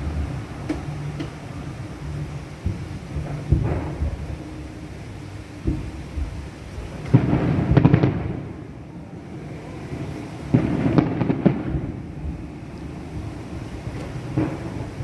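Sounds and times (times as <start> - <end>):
low rumble: 0.0 - 15.0
firework cracks: 2.6 - 4.8, 5.6 - 15.0
firework bangs: 2.6 - 15.0.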